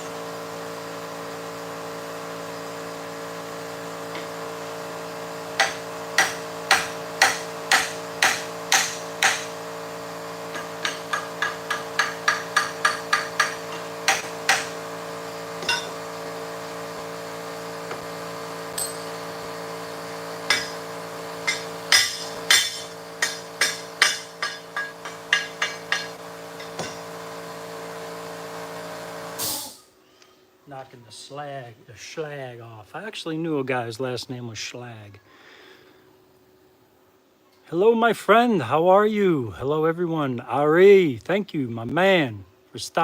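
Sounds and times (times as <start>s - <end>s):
steady hum: 2.8s - 28.1s
chipping hammer striking metal: 5.5s - 9.7s, 10.5s - 14.9s, 15.6s - 16.0s, 20.4s - 27.2s.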